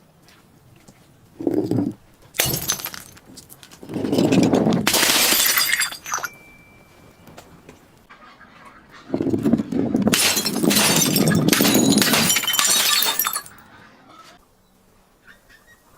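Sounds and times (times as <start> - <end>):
glass cracking and crunching: 2.4 - 6.4, 10.1 - 13.5
glass shattering: 2.4 - 7.2, 10.1 - 13.6.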